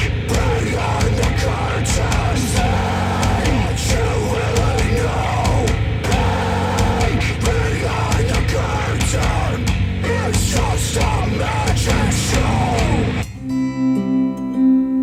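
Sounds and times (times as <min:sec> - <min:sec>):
heavy rock music on speakers: 0:00.0 - 0:13.4
plucked guitar notes: 0:11.9 - 0:15.0.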